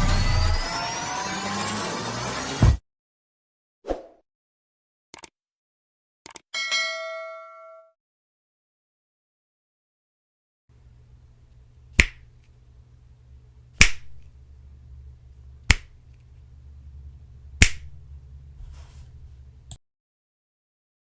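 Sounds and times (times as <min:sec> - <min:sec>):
low hum: 0:10.7 - 0:19.7
finger snaps: 0:12.0 - 0:12.3, 0:13.8 - 0:14.3, 0:15.6 - 0:16.0, 0:17.6 - 0:18.0.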